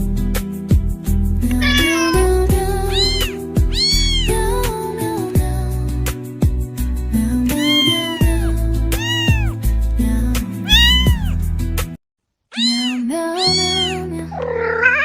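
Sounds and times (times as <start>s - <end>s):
cat meowing: 1.6s - 4.4s, 7.5s - 9.6s, 10.6s - 11.4s, 12.5s - 15.0s.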